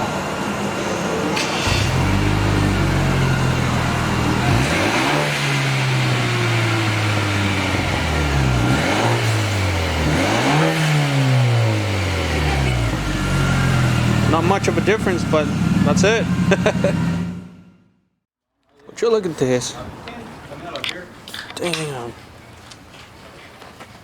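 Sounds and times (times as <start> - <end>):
car engine revving: 1.4 - 17.9.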